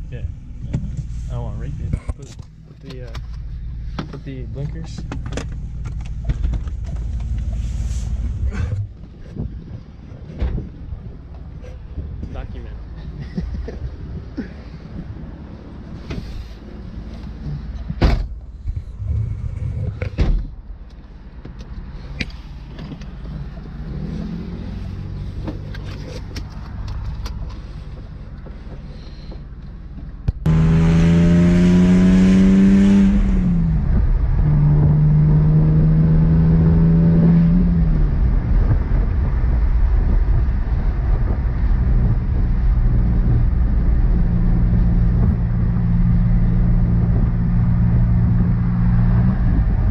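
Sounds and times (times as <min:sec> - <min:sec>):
car engine accelerating: 0:21.7 - 0:49.9.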